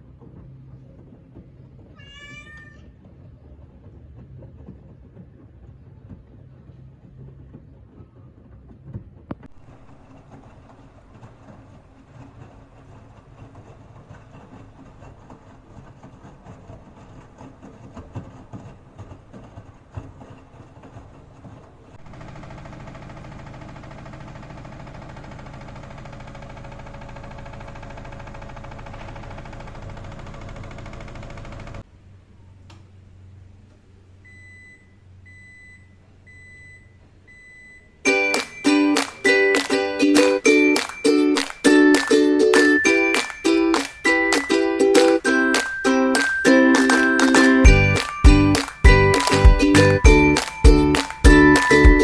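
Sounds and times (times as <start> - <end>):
washing machine churning: 9.6 - 31.8
washing machine motor whine: 22.1 - 31.8.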